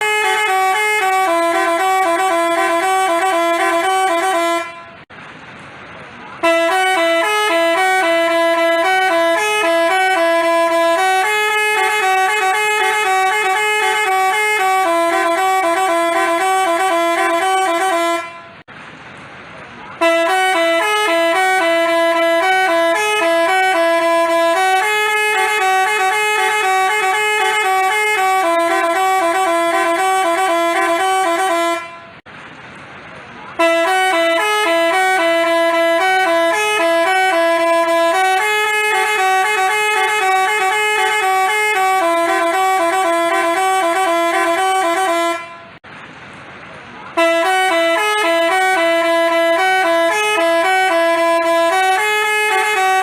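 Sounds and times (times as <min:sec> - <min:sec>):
multi-tone musical horn playing: 0:00.0 - 0:05.1, 0:06.4 - 0:18.7, 0:20.0 - 0:32.2, 0:33.6 - 0:45.8, 0:47.2 - 0:53.0.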